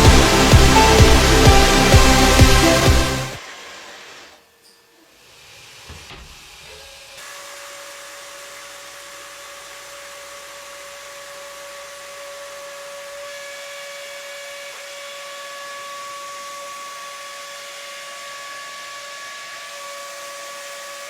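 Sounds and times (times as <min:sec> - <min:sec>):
higher machine tones: 0:00.0 - 0:03.4
machine hissing and whining: 0:00.0 - 0:04.4.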